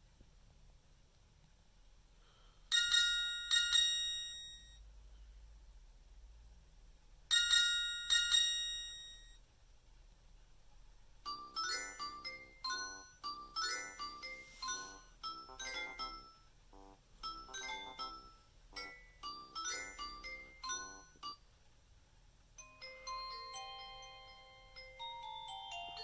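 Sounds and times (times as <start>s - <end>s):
bell-like phone ringtone: 2.7s - 4.8s, 7.3s - 9.4s, 11.3s - 16.4s, 17.2s - 21.4s, 22.6s - 26.0s
quick low-note ringtone tune: 11.3s - 21.4s.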